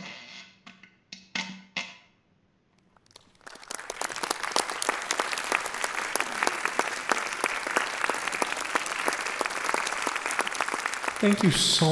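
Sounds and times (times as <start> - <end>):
applause: 3.0 - 11.9.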